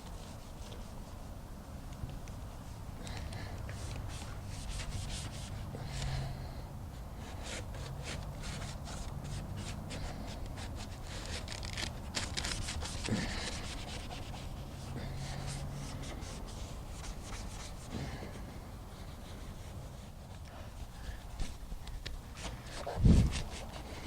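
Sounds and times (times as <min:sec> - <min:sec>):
abrasive pad rubbing plastic: 0:03.4 - 0:06.2, 0:07.0 - 0:21.6.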